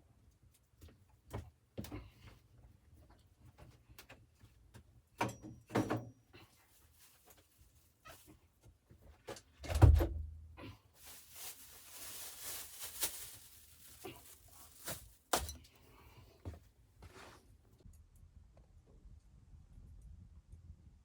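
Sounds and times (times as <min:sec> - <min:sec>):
rustling: 0:10.9 - 0:15.6.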